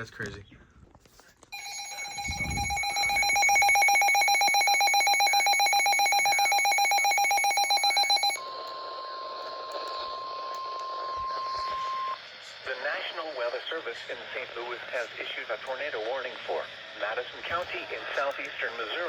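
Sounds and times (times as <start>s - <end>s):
single steady alarm tone: 1.5s - 8.5s
warbling two-tone alert signal: 1.6s - 8.4s.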